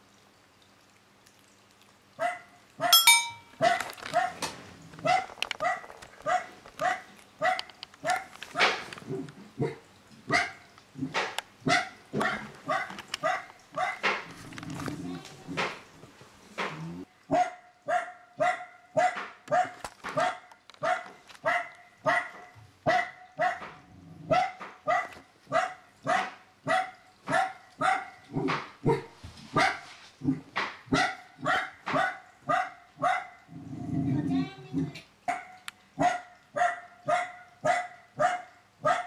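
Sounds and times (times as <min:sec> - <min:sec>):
dog barking: 0:02.2 - 0:04.4, 0:05.0 - 0:08.8, 0:09.6 - 0:10.6, 0:11.6 - 0:14.2, 0:17.3 - 0:29.8, 0:30.9 - 0:33.4, 0:35.3 - 0:39.0.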